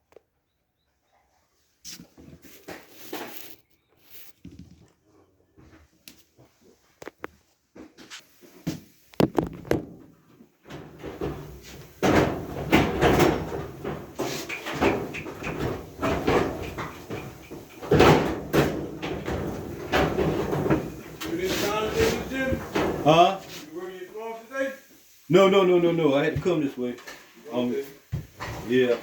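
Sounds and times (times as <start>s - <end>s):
clatter and scraping: 9.2s - 23.7s, 28.2s - 29.0s.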